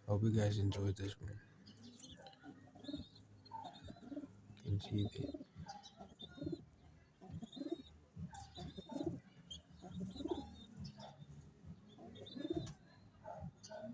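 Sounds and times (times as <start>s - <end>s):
young pigeons cooing: 0.2s - 13.9s.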